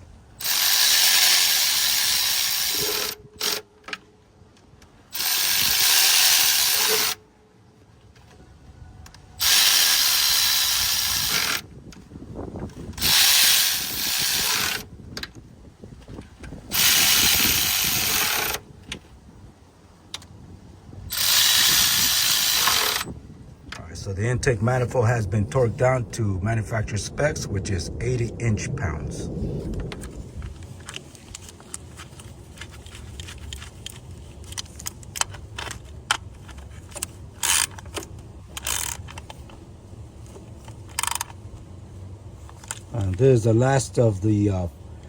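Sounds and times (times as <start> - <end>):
ratchet turning bolts: 0.4 - 3.6, 5.1 - 7.2, 9.4 - 11.6, 13.0 - 14.9, 16.7 - 18.6, 21.1 - 23.1, 37.4 - 38.0, 38.6 - 39.2, 40.9 - 41.3.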